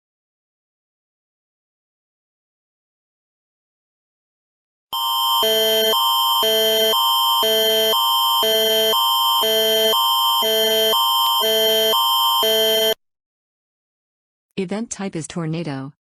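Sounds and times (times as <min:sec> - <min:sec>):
alternating emergency alert tones: 0:05.0 - 0:13.0.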